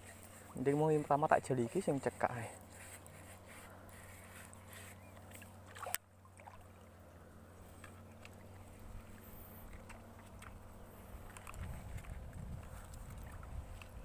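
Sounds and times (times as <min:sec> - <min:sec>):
water sloshing and trickling: 0:00.0 - 0:14.0.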